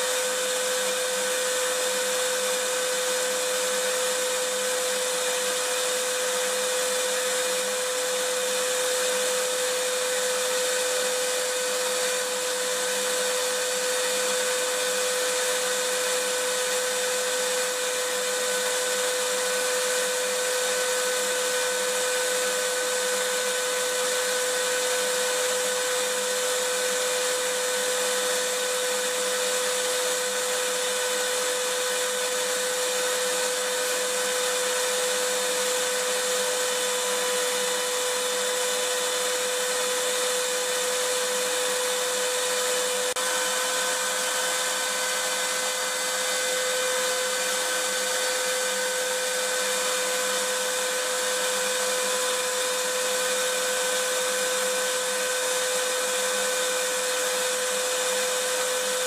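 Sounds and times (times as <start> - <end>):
vacuum cleaner motor running: 0.0 - 59.0.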